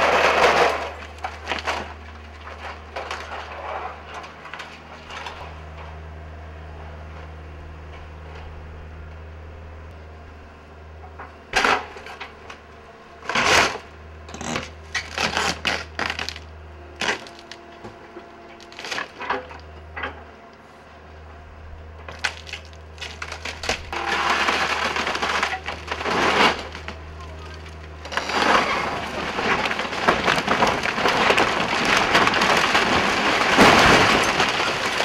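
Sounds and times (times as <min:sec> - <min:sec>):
wood cracking and splintering: 0:00.0 - 0:05.8, 0:13.2 - 0:20.6, 0:22.0 - 0:35.0
debris crashing: 0:00.0 - 0:06.0, 0:13.2 - 0:20.2, 0:22.0 - 0:35.0
excavator engine drone: 0:00.0 - 0:35.0.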